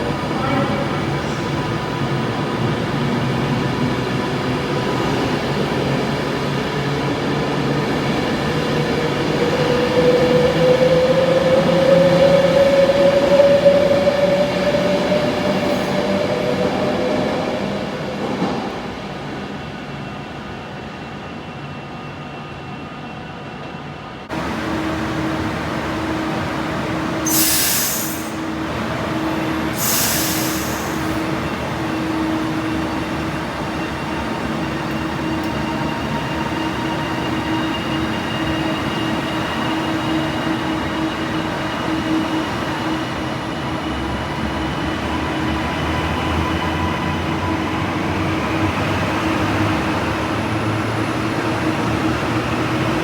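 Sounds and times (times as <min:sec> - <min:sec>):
train humming: 0:24.2 - 0:53.0
air hisses: 0:27.2 - 0:28.4, 0:29.7 - 0:31.2.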